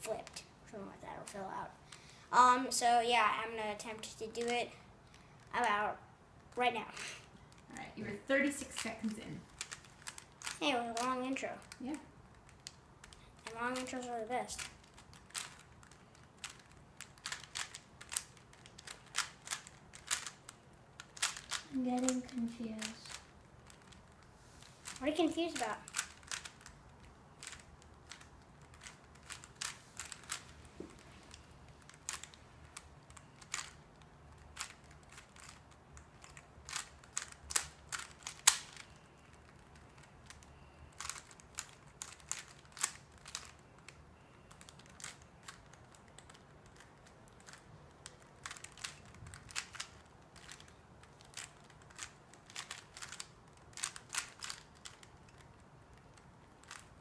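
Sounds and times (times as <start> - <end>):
puzzle cube plastic clicks: 3.8 - 5.8, 8.6 - 57.0.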